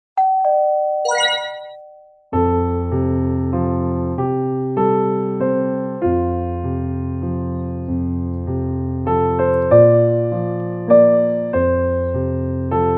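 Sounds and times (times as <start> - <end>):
keyboard chords: 0.2 - 2.0
bell-like notes: 1.0 - 2.0.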